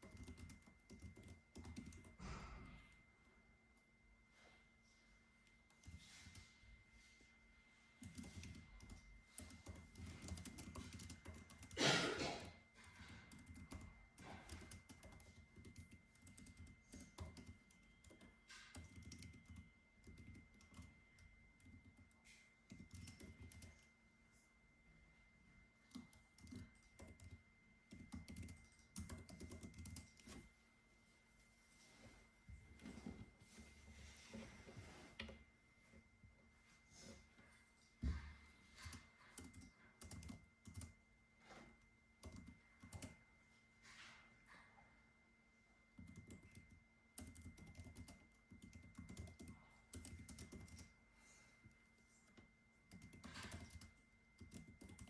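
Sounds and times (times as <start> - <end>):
keyboard typing: 0.0 - 2.2, 5.5 - 6.6, 8.0 - 23.9, 25.8 - 30.5, 38.8 - 41.0, 42.2 - 43.2, 46.0 - 51.0, 51.6 - 55.0.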